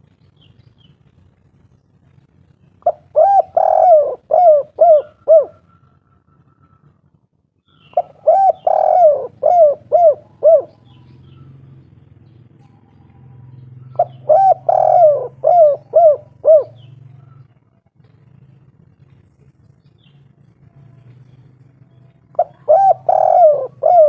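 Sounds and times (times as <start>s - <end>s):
faint low hum: 0.0s - 24.0s
dove cooing: 2.8s - 7.0s, 7.8s - 11.8s, 12.6s - 17.6s, 22.0s - 24.0s.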